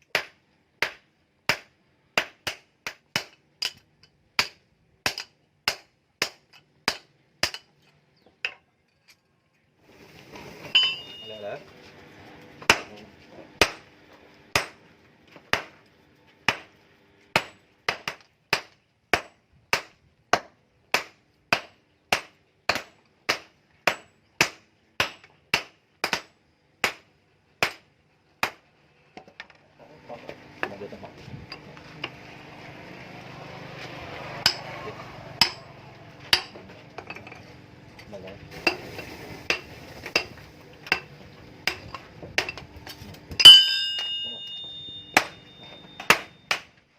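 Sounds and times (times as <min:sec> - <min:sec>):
hammer striking metal on anvil: 0:10.8 - 0:11.5, 0:34.4 - 0:34.8, 0:35.4 - 0:35.7, 0:36.3 - 0:37.4, 0:40.9 - 0:42.6, 0:43.4 - 0:46.7.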